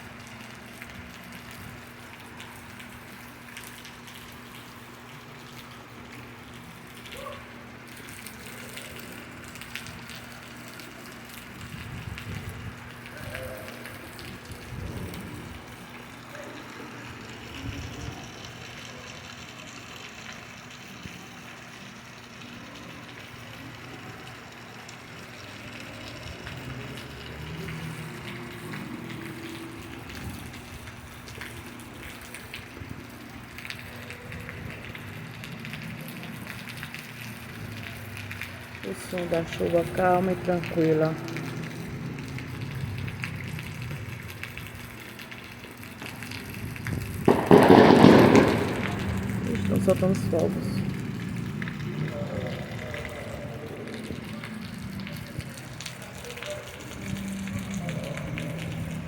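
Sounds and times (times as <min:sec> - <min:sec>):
steady rain falling: 0:00.0 - 0:59.0
fireworks crackling: 0:00.1 - 0:59.0
water running: 0:12.8 - 0:46.9, 0:48.7 - 0:59.0
low rumble: 0:46.4 - 0:55.8.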